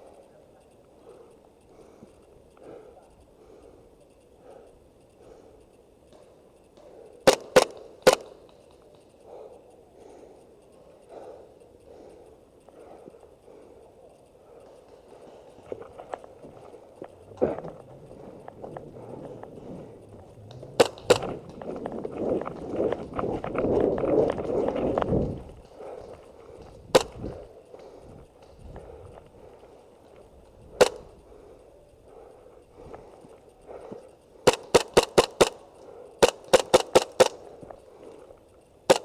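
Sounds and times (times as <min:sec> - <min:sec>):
airsoft pistol shots: 0:07.3 - 0:08.4, 0:20.8 - 0:21.4, 0:26.9 - 0:27.3, 0:30.8 - 0:31.1, 0:34.4 - 0:35.6, 0:36.2 - 0:37.5
rustling scuffling movement: 0:15.3 - 0:26.3.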